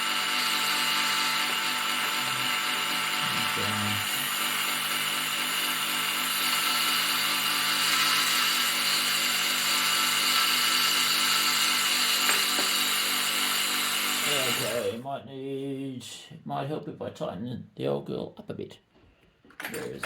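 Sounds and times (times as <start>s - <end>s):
milling machine motor whining: 0.0s - 15.0s.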